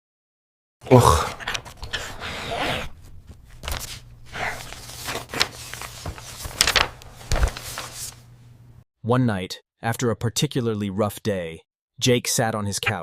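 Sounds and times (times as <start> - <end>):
short rustling: 2.9 - 8.4.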